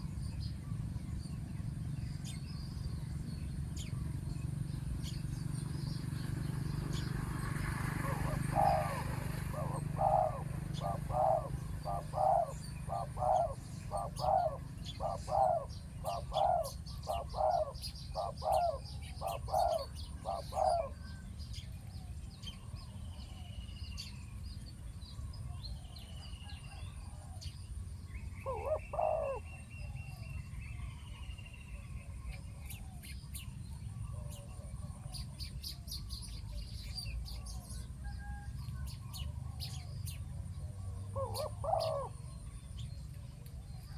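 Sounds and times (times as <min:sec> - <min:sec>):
small birds chirping: 0:00.0 - 0:25.8
dove cooing: 0:07.5 - 0:21.1, 0:28.4 - 0:29.5, 0:40.6 - 0:42.4.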